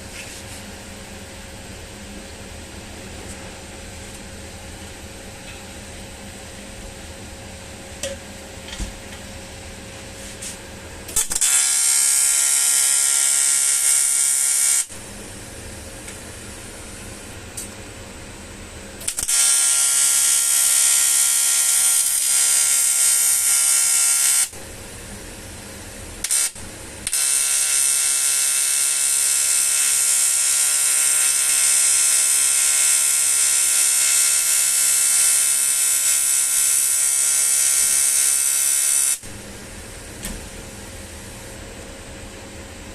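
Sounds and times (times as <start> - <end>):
welding arc buzzing: 10.4 - 17.7, 19.0 - 41.6.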